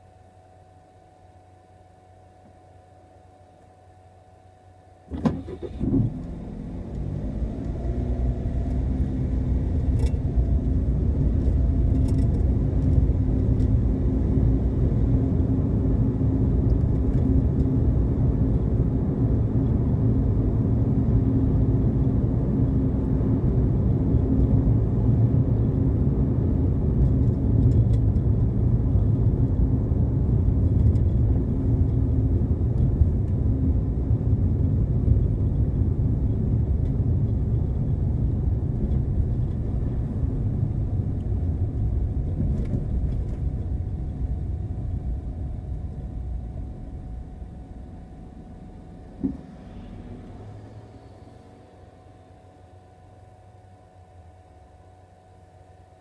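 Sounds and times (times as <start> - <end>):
car engine starting and running: 5.0 - 52.8.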